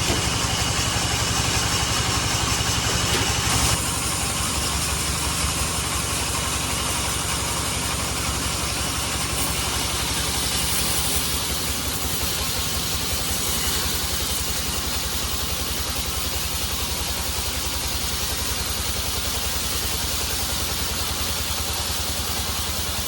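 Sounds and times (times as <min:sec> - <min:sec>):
band saw engine drone: 0:00.0 - 0:16.1.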